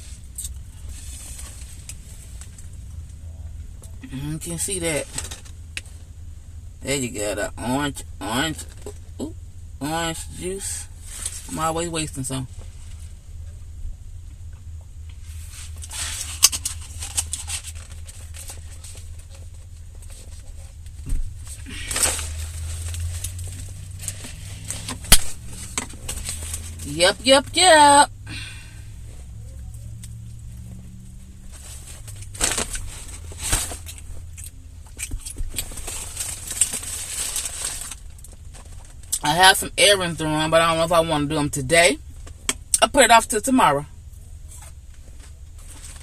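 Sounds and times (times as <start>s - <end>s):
crackly rustling: 0.0s - 4.1s, 4.9s - 6.8s, 12.3s - 27.8s, 28.4s - 39.2s, 43.9s - 46.0s
steady low hum: 0.0s - 46.0s
food wrapper crinkling: 21.5s - 26.8s, 31.6s - 39.1s.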